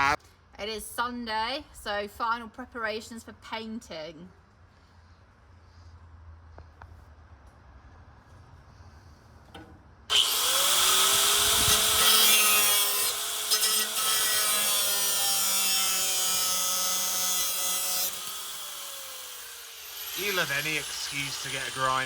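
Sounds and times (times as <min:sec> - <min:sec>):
angle grinder cutting metal: 0:10.1 - 0:22.0.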